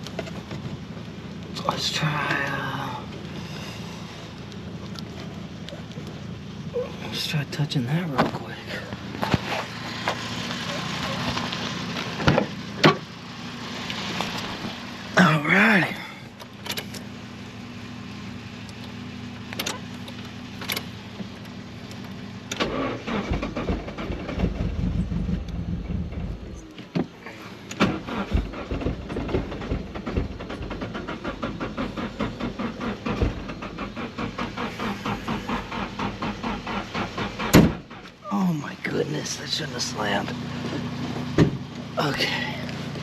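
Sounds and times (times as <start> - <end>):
engine running roughly: 0.0 - 43.0
engine cranking: 1.6 - 17.2, 18.6 - 43.0
loud slam: 37.5 - 37.9.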